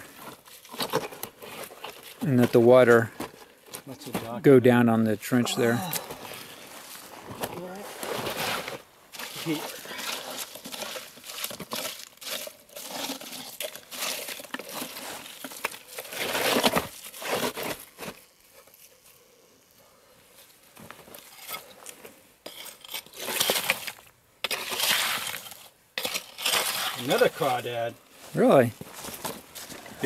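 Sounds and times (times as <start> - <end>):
rocks and gravel crunching: 5.6 - 19.0, 20.7 - 30.0.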